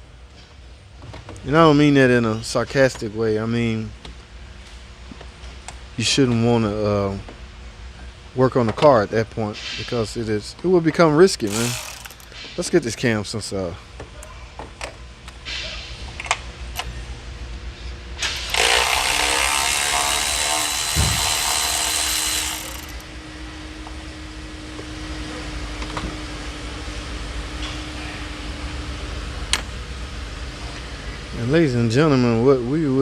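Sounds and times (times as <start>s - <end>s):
power tool running: 11.4s - 12.5s, 18.2s - 23.1s.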